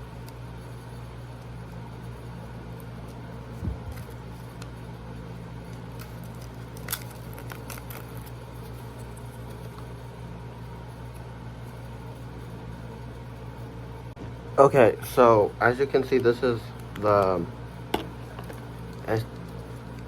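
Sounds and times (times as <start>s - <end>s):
electric fan humming: 0.0s - 20.0s
packaging clicks: 6.0s - 8.2s.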